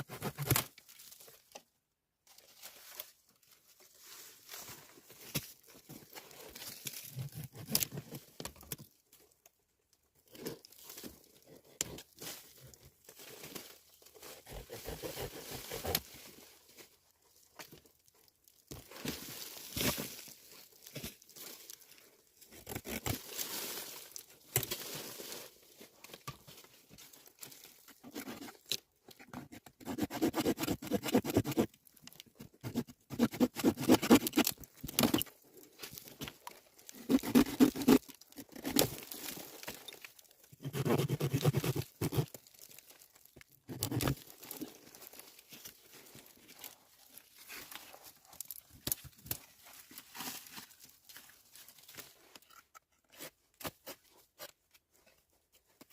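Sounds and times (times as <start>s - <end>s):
crunching tearing and rustling: 30.7s - 52.5s.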